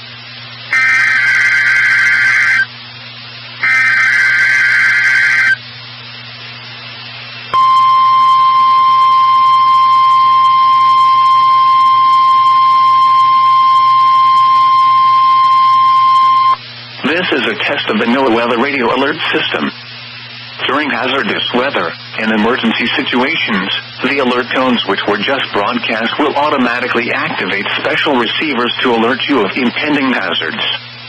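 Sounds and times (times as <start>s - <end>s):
steady alarm tone: 0.7s - 2.7s, 3.6s - 5.6s, 7.6s - 16.6s
warbling data tone bursts: 0.7s - 2.7s, 3.6s - 5.6s.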